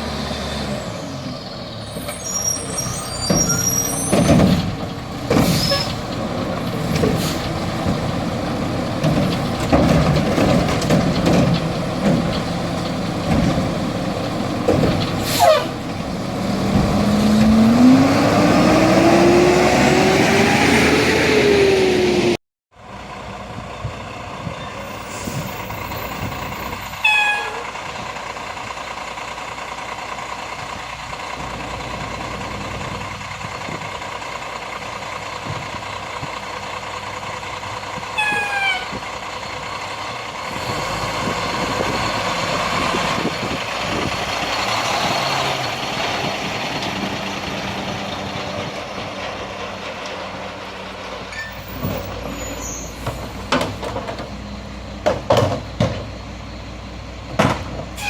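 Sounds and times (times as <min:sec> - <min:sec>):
garbage truck engine revving: 0:02.4 - 0:22.4, 0:39.1 - 0:56.2.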